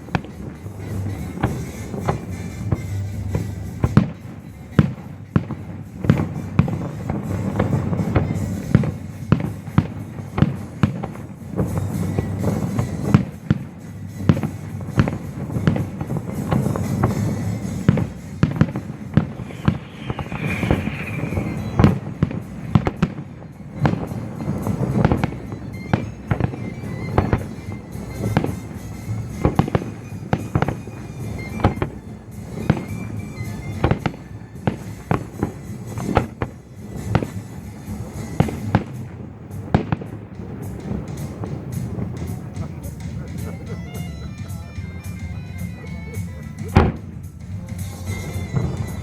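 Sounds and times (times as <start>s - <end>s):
fireworks bursting with sharp bangs: 0.0s - 49.0s
music playing: 0.0s - 49.0s.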